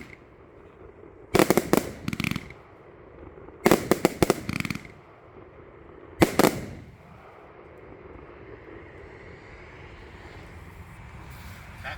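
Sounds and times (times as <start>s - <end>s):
firework crackling rattle: 0.0s - 0.3s, 1.4s - 2.6s, 3.7s - 5.0s, 6.2s - 7.2s
firework bangs: 0.0s - 7.6s.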